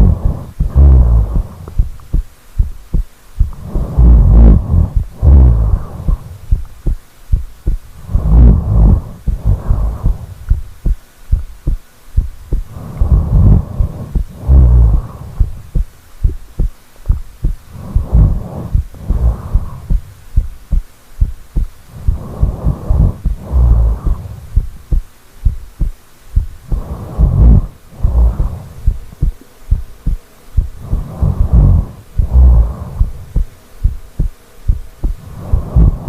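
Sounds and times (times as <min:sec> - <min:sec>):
person snoring: 0:00.0 - 0:01.8, 0:03.6 - 0:06.4, 0:08.0 - 0:10.4, 0:12.7 - 0:15.6, 0:17.7 - 0:20.1, 0:21.9 - 0:24.6, 0:26.7 - 0:29.0, 0:30.8 - 0:33.4, 0:35.2 - 0:36.0.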